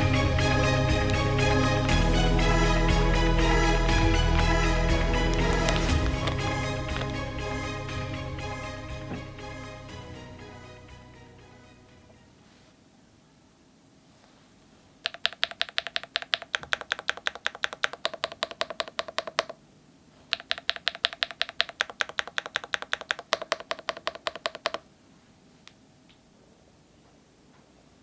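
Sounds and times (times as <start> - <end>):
rapid mechanical keyboard clacks: 15.1 - 19.6, 20.3 - 24.8.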